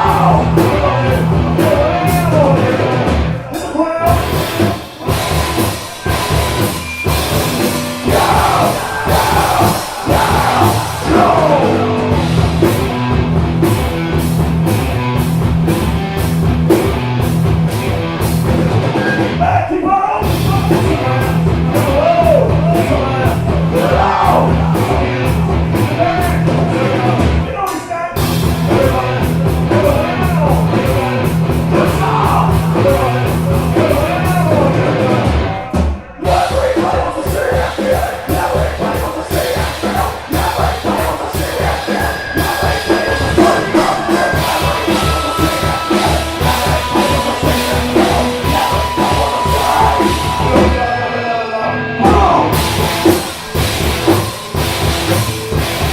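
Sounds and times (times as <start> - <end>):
bass: 0.0 - 27.6, 28.2 - 55.9
drums: 0.0 - 55.9
rock band playing live: 0.0 - 55.9
melody line bending in pitch: 43.3 - 50.9.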